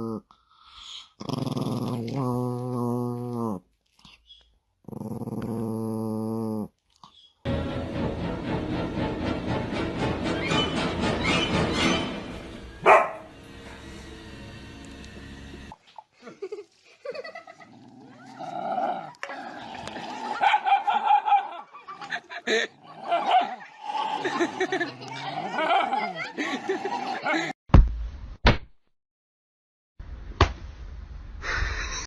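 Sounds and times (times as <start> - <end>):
people laughing: 16.2 - 17.8, 20.3 - 27.5.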